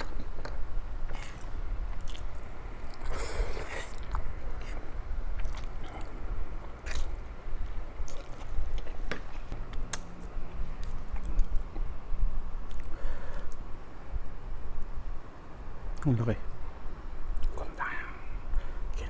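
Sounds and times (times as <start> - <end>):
chewing and biting: 0.0 - 9.3.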